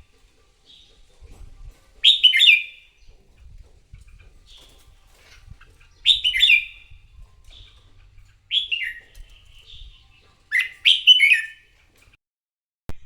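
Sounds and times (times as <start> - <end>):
soft bird chirps: 0.0 - 12.2
bird singing falling notes: 2.0 - 3.3, 4.1 - 12.1.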